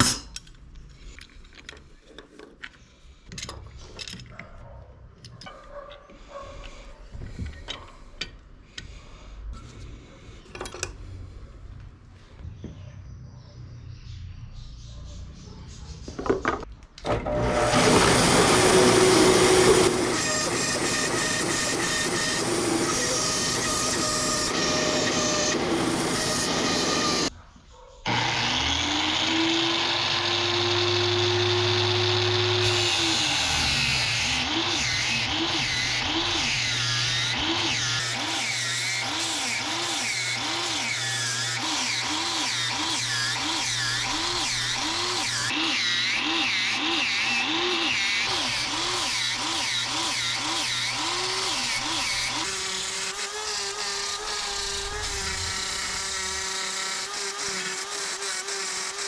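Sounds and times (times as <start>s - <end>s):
electric power tool whining: 17.0s - 27.3s, 28.1s - 59.0s.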